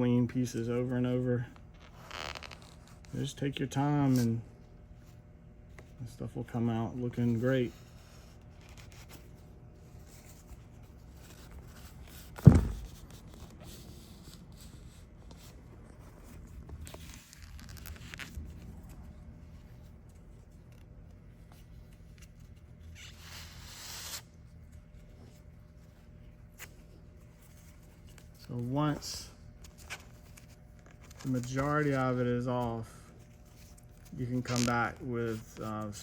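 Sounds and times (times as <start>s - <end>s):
sharp thump: 12.4s - 13.0s
paper towels rustling and rubbing: 13.0s - 22.9s, 24.6s - 36.0s.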